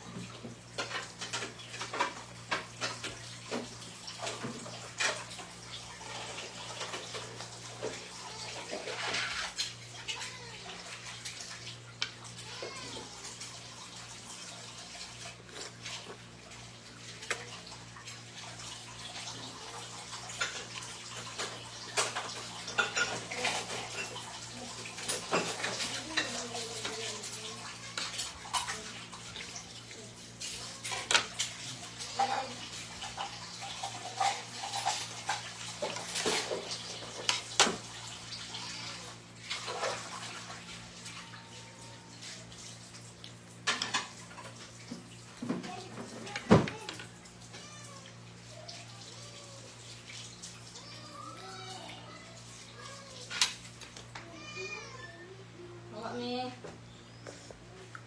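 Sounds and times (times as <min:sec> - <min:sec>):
cutlery and dishes clinking: 0:20.3 - 0:28.8, 0:43.6 - 0:44.6.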